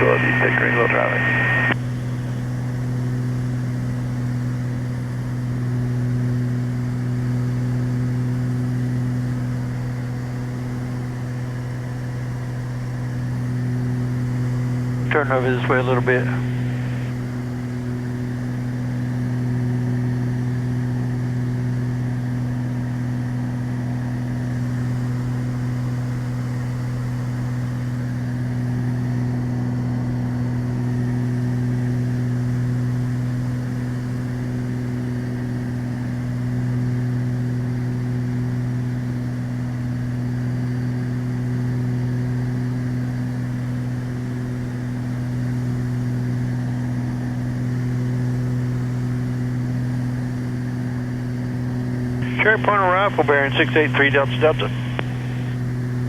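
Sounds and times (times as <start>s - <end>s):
propeller plane engines droning: 0.0s - 56.0s.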